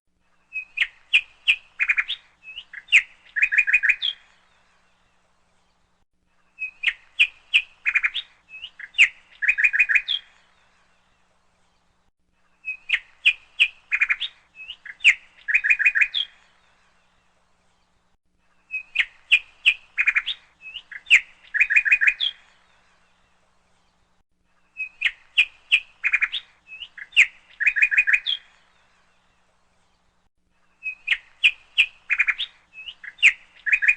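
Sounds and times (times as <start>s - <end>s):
bird chirping and trilling: 0.5s - 4.8s, 6.5s - 11.0s, 12.6s - 17.1s, 18.6s - 23.3s, 24.6s - 29.3s, 30.8s - 33.9s.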